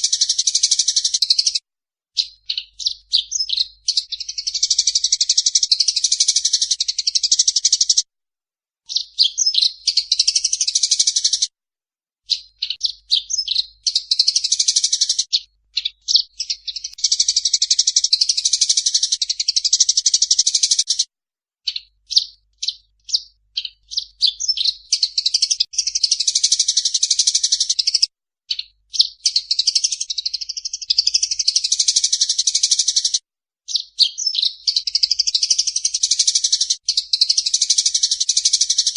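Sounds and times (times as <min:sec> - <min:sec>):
sparrows chirping harshly: 0:00.0 - 0:08.1, 0:08.8 - 0:11.5, 0:12.2 - 0:38.9.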